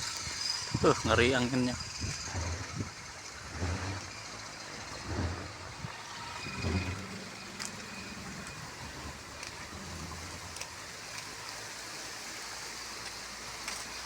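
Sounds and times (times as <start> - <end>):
gusty wind on microphone: 0.0 - 10.6.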